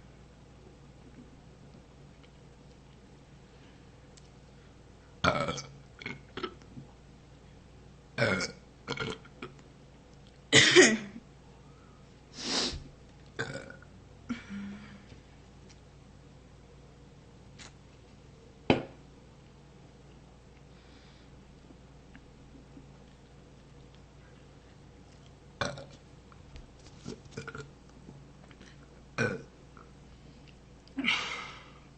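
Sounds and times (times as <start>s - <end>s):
young woman burping: 10.5s - 11.2s, 13.4s - 14.8s, 29.2s - 29.5s.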